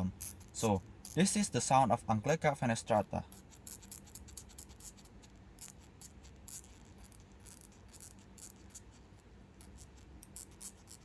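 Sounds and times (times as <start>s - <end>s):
katydid high-pitched ticks and scrapes: 0.0s - 11.0s.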